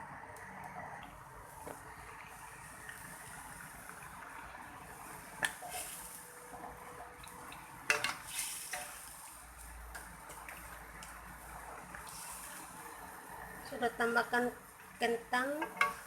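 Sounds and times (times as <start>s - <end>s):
utensil scraping in cooking pot: 7.9s - 9.4s.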